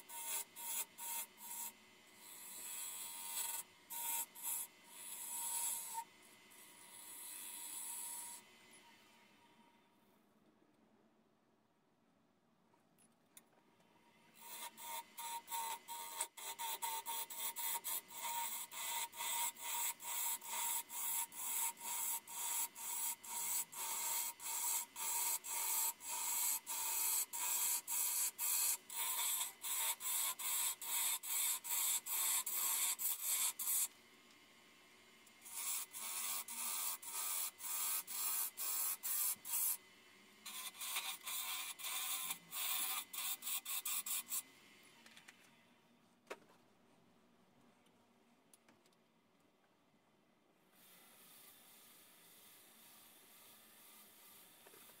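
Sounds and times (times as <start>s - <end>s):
lathe tool cutting wood: 14.4s - 33.8s, 35.5s - 39.7s.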